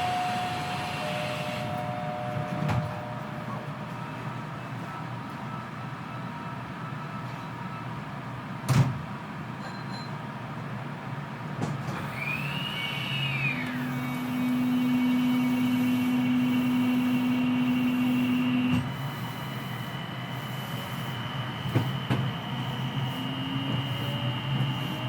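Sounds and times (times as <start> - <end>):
train inverter tone: 0.0 - 8.2, 12.1 - 25.0
traction motor low hum: 12.2 - 25.0.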